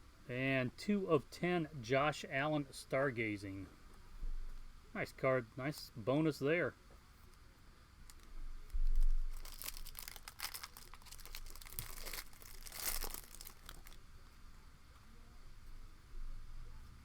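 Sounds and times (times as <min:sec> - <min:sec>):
foil wrapper tearing and crinkling: 0:08.0 - 0:14.0.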